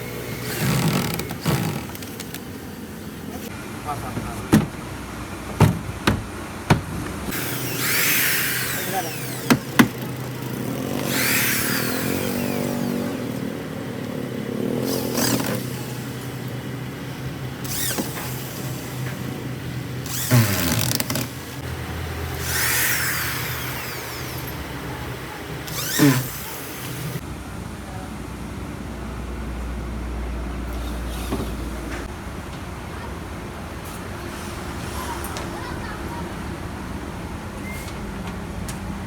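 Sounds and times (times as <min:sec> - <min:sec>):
power tool whirring: 0:00.0 - 0:02.6, 0:05.5 - 0:13.5, 0:14.5 - 0:16.5, 0:17.6 - 0:27.2
sharp clicks and knocks: 0:04.1 - 0:04.9, 0:05.5 - 0:08.0, 0:09.3 - 0:10.6.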